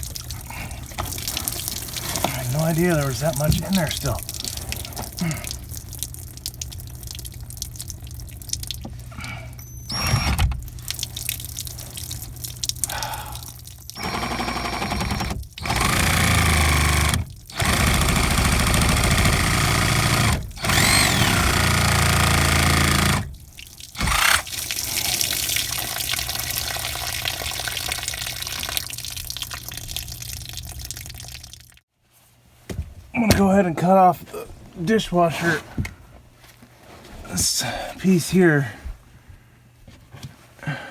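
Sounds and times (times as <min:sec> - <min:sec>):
liquid pouring from pipe: 0:00.0 - 0:18.6, 0:19.2 - 0:31.8.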